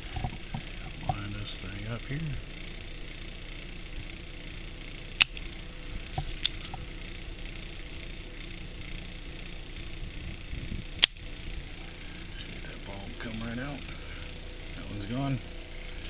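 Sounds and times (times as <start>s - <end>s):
steady hum: 0.0s - 16.0s
sharp clicks: 5.2s - 5.5s, 11.0s - 11.3s.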